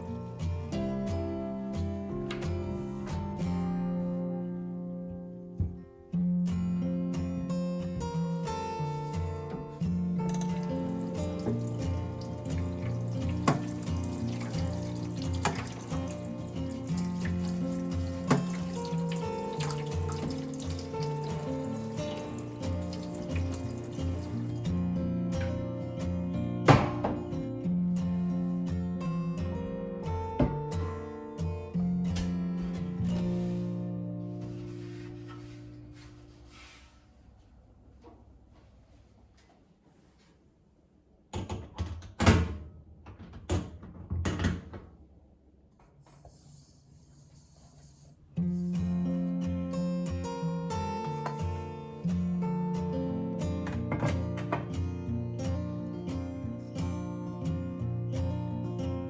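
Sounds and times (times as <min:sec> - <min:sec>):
background music: 0:00.0 - 0:35.6
tap water running into sink: 0:10.3 - 0:24.8.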